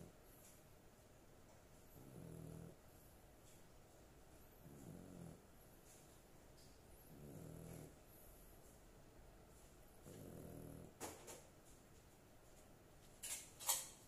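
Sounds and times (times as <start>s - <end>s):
dog snoring: 1.9s - 2.8s, 4.6s - 5.5s, 7.0s - 8.4s, 10.0s - 11.1s.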